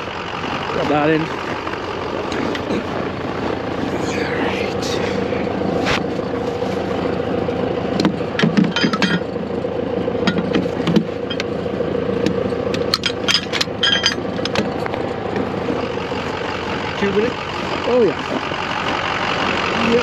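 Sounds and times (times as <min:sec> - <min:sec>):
tractor engine idling: 0:00.0 - 0:20.0
metallic clinks and rattles: 0:08.6 - 0:09.3, 0:12.9 - 0:14.6.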